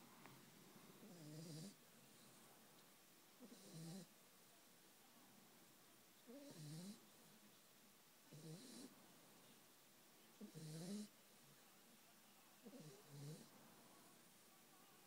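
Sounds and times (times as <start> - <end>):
dog snoring: 1.0 - 1.8, 3.4 - 4.1, 6.3 - 7.0, 8.3 - 8.9, 10.4 - 11.1, 12.7 - 13.5.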